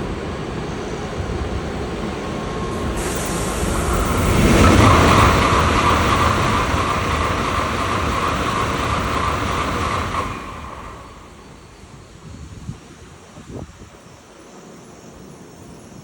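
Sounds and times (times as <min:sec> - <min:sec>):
bullet train passing: 0:00.0 - 0:16.0.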